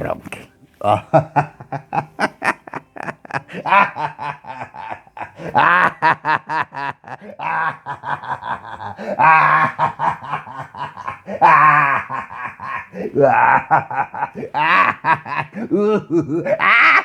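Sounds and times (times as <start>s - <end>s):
person laughing loudly: 0.8s - 17.0s.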